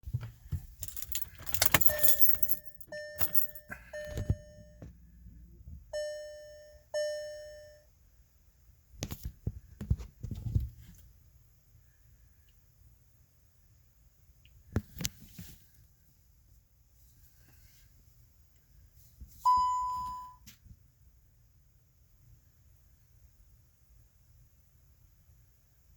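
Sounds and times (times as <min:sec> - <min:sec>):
keys jangling: 0:00.5 - 0:04.0
car dashboard warning chime: 0:01.6 - 0:05.2, 0:05.8 - 0:07.9, 0:19.5 - 0:20.4.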